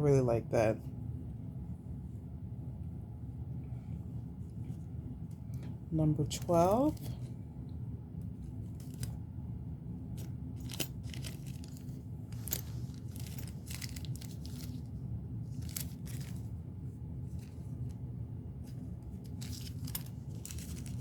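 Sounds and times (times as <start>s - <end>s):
low hum: 0.3s - 21.0s
plastic bag rustling: 10.2s - 14.9s, 15.5s - 16.6s, 19.1s - 21.0s.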